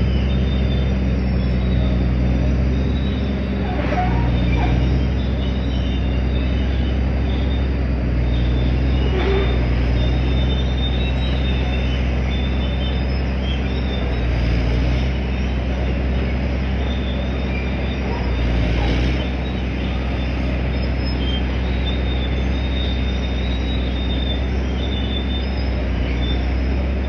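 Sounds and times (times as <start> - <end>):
diesel engine droning: 0.0 - 27.0
high squeaks: 0.3 - 14.5.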